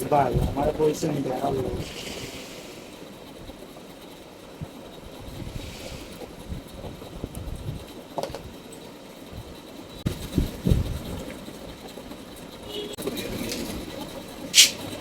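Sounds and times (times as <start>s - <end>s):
sharp click: 14.6s - 14.9s
brief hiss: 14.6s - 15.0s.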